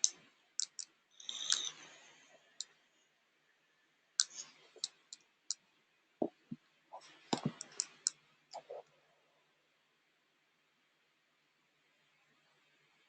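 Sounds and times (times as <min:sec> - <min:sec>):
mouse and keyboard clicks: 0:00.6 - 0:01.9, 0:04.2 - 0:05.2, 0:07.4 - 0:08.8.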